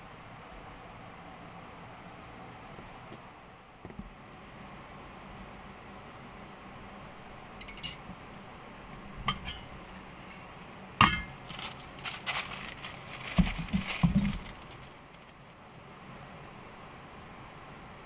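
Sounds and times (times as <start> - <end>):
steady background hiss: 0.0 - 18.0
light clinks and knocks: 7.6 - 8.0.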